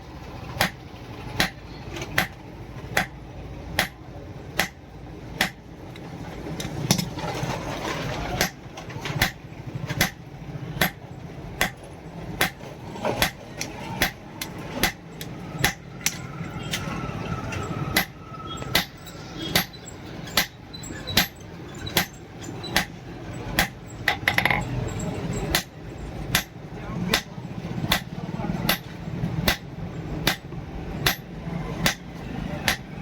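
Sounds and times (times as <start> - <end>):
hammer striking steel on anvil: 1.4 - 1.6, 3.8 - 4.0, 4.6 - 4.8, 10.0 - 10.2, 10.8 - 11.0, 14.8 - 15.0, 17.9 - 20.6, 21.2 - 23.0, 23.6 - 24.6, 25.5 - 25.7, 26.3 - 27.3, 27.9 - 28.1, 28.7 - 30.4, 31.0 - 32.0, 32.6 - 32.9.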